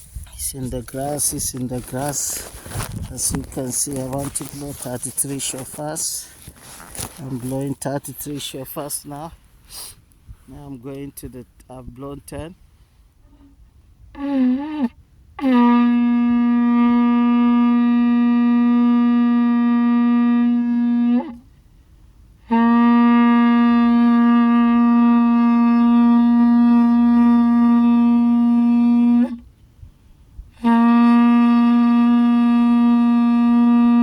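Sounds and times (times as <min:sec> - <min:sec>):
shofar blasts: 0:00.4 - 0:07.6, 0:14.1 - 0:21.4, 0:22.4 - 0:29.4, 0:30.6 - 0:34.0.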